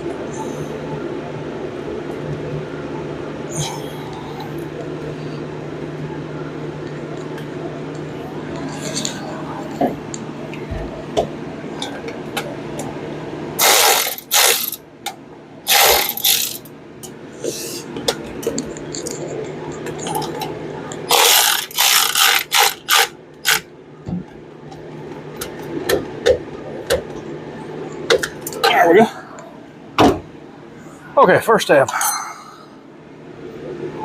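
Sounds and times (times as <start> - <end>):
ratchet wrench clicking: 13.6 - 14.8, 15.7 - 16.7, 21.1 - 23.6.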